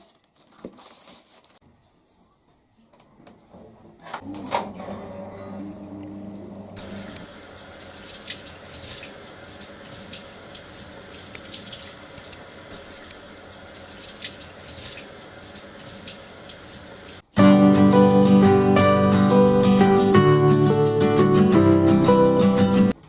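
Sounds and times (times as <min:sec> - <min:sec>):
acoustic guitar music: 0:17.3 - 0:23.0.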